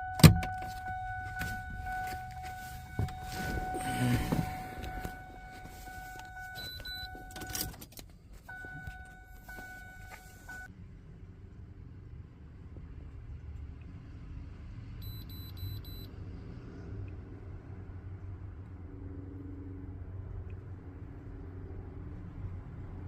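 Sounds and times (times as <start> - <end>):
car electronic warning chime: 0.0 - 7.8, 8.5 - 10.7, 15.0 - 16.1.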